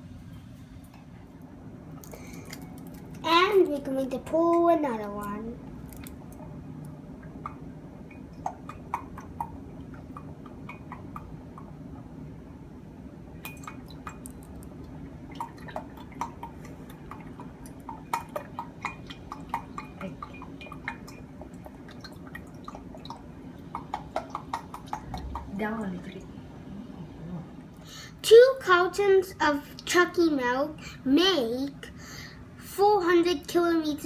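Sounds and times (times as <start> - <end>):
milk pouring and glugging: 13.5 - 25.6.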